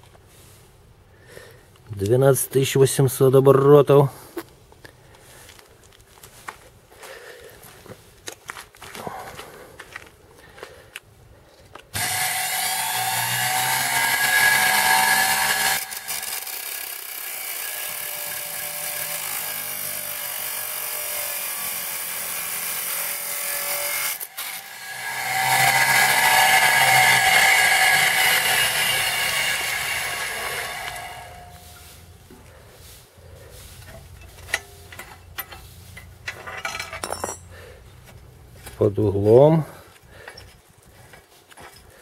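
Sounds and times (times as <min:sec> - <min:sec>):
cut-off saw whining: 0:12.0 - 0:32.1.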